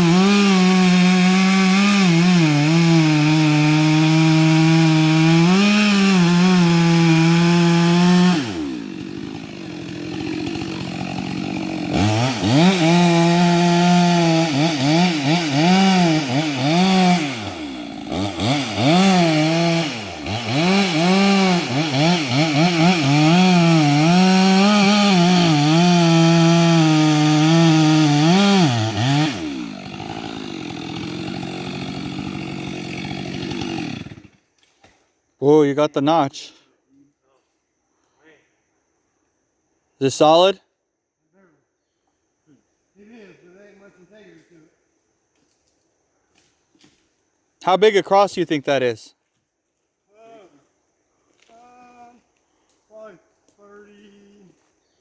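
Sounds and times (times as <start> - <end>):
chainsaw cutting wood: 0.0 - 34.9.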